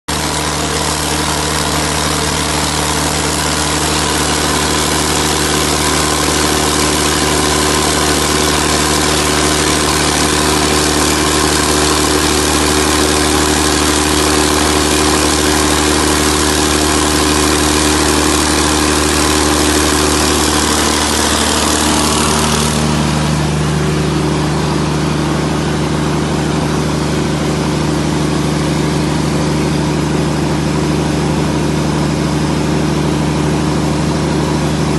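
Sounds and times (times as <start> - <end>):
diesel generator engine humming: 0.1 - 34.9.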